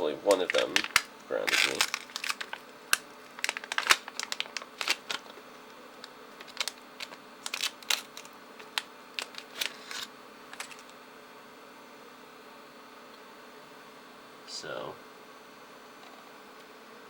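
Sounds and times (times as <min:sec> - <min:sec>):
plastic crinkling: 0:00.2 - 0:05.4, 0:06.0 - 0:10.9.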